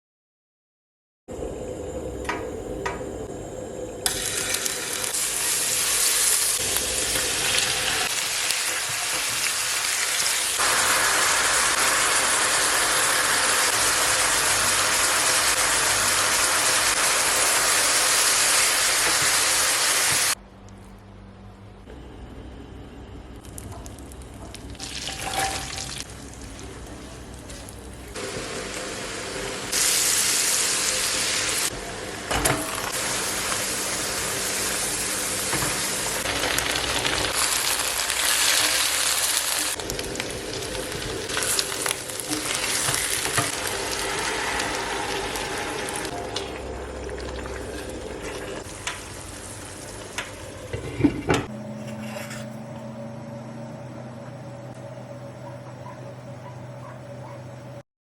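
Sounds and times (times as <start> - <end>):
food sizzling in a pan: 4.1 - 20.4, 24.8 - 31.8, 32.7 - 51.0.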